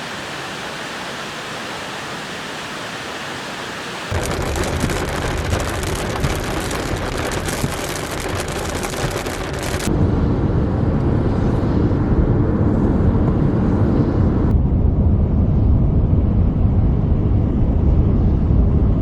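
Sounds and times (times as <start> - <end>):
heavy rain on hard surface: 0.0 - 9.9
steady low rumble: 4.1 - 19.0.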